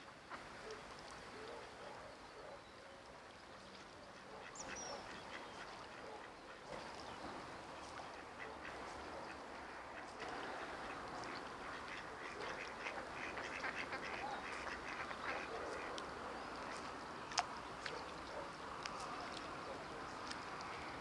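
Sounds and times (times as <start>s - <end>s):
quacking animal calls: 11.7s - 15.9s.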